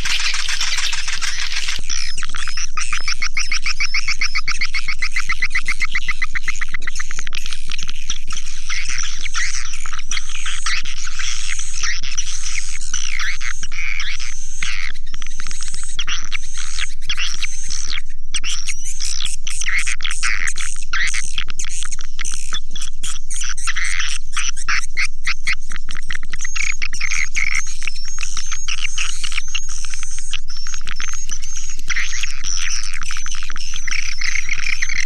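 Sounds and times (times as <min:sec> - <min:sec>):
birds twittering and trilling: 0:00.0 - 0:35.0.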